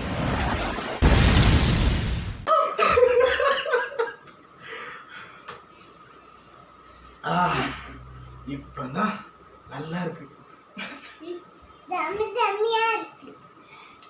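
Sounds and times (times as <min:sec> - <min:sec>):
loud rushing noise: 0:00.0 - 0:02.4.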